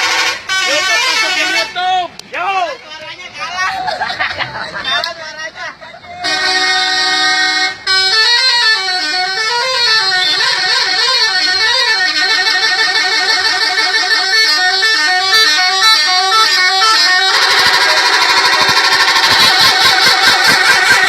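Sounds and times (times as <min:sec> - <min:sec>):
musical bus horn playing a tune: 0:00.0 - 0:01.9, 0:06.2 - 0:21.0
dense warbling horn: 0:06.2 - 0:21.0.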